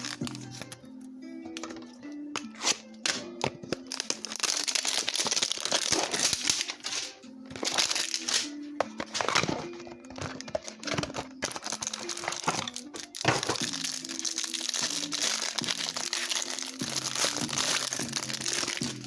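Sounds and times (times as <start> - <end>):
quiet background music: 0.0 - 19.0
packaging crinkling and tearing: 3.8 - 9.6, 10.2 - 19.0.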